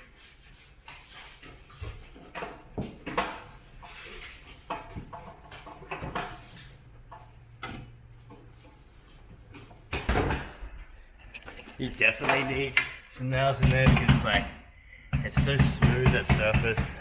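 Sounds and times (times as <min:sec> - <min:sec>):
tools knocking and clunking: 0:01.9 - 0:03.6, 0:04.6 - 0:08.6, 0:12.1 - 0:17.0.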